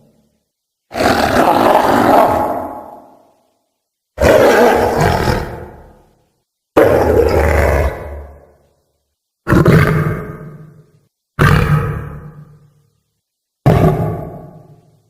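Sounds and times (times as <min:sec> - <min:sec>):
cartoon monster roars: 0:00.9 - 0:03.2, 0:04.2 - 0:06.0, 0:06.8 - 0:08.4, 0:11.4 - 0:12.4, 0:13.6 - 0:14.7.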